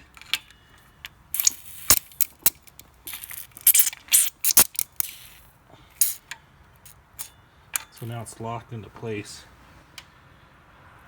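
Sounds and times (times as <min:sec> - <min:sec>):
short scraping rasps: 0:00.0 - 0:08.2
metallic gear clicks: 0:01.4 - 0:06.2.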